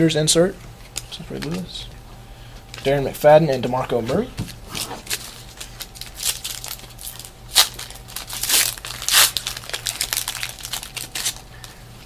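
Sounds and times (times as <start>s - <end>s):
foil wrapper crinkling: 4.5s - 11.8s
foil wrapper ripping: 4.6s - 11.8s.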